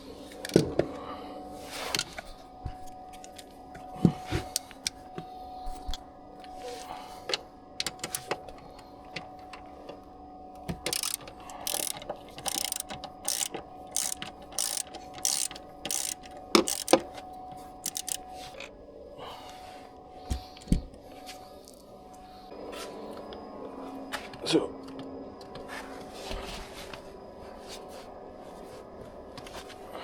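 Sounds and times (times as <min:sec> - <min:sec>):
sharp clicks: 0:07.8 - 0:08.3, 0:10.8 - 0:17.0, 0:17.8 - 0:18.2
ratchet wrench strokes: 0:10.9 - 0:17.0, 0:17.8 - 0:18.2.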